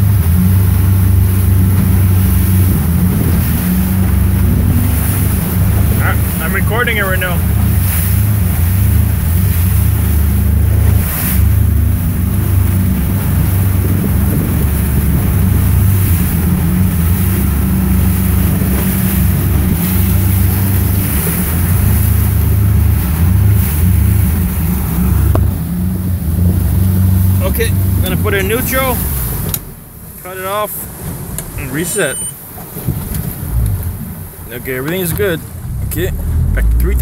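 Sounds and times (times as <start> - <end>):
wind noise on microphone: 0.0 - 6.5, 7.4 - 28.0
outboard motor misfiring: 0.0 - 37.0.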